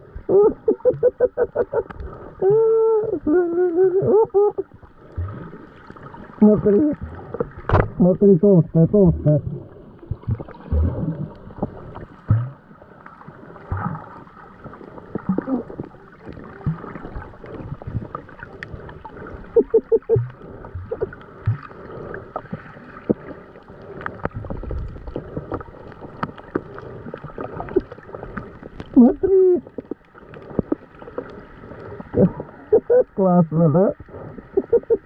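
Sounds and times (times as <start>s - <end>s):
muffled water sloshing: 0.0s - 35.0s
short pitched blips: 19.6s - 20.3s.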